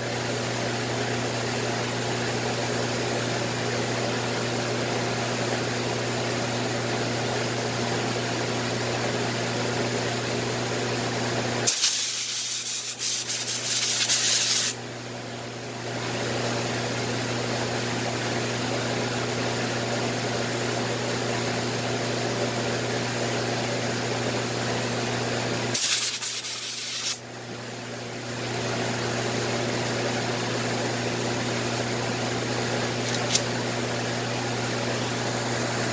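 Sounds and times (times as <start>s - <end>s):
sandpaper rubbing on wood finish: 11.7s - 14.8s.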